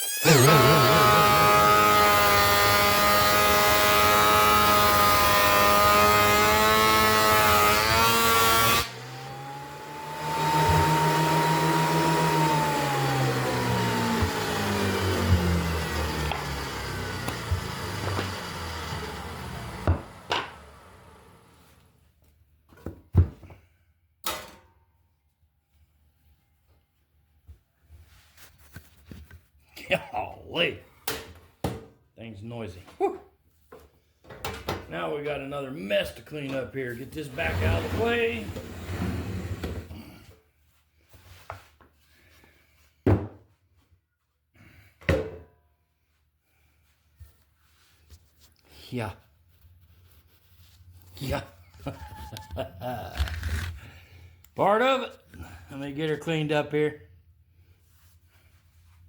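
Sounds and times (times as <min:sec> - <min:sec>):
thickness planer running: 0:00.2 - 0:21.6.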